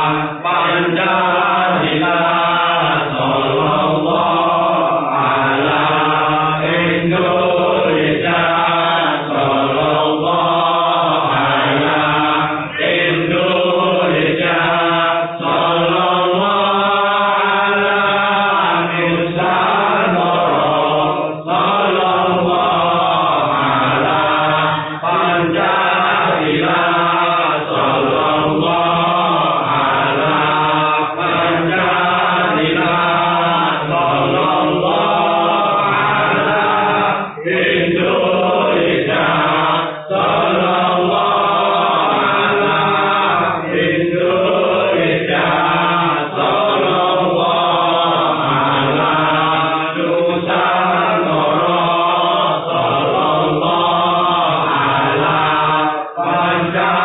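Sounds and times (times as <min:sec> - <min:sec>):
group chanting in unison: 0:00.0 - 0:57.0.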